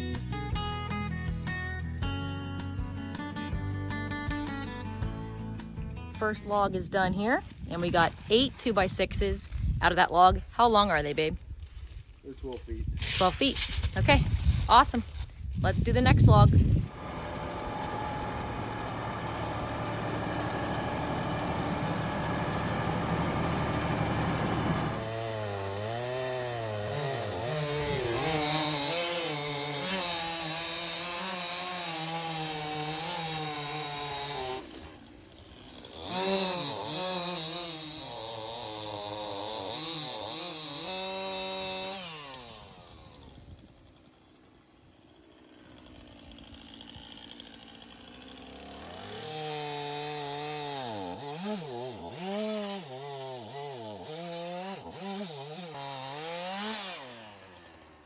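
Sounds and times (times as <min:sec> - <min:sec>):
sawmill gas engine running: 0:16.7 - 0:25.7.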